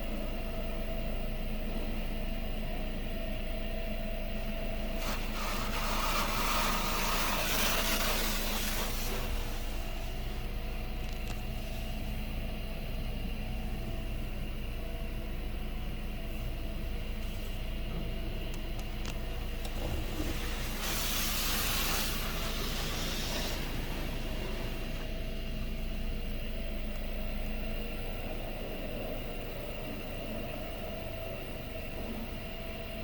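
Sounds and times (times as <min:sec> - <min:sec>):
car wash mechanical hum: 0:00.0 - 0:33.0
loud hiss of spray: 0:04.9 - 0:10.6, 0:19.4 - 0:25.5.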